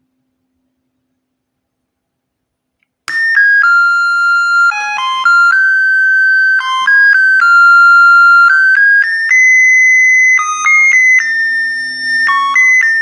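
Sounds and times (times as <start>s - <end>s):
electronic doorbell melody: 3.1s - 13.0s.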